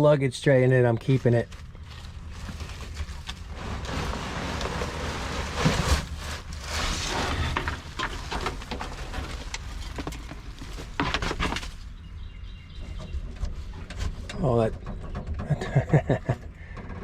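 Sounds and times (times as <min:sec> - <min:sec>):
rustling and scraping: 0:00.9 - 0:17.0.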